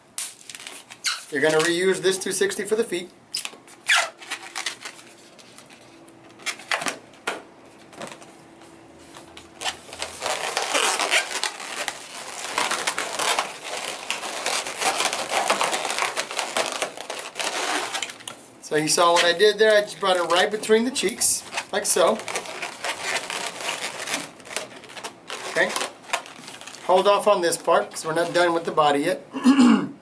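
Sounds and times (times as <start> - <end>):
balloon squeaking and rubbing: 0.8 - 1.7, 3.3 - 4.9, 9.5 - 18.3, 18.9 - 27.0.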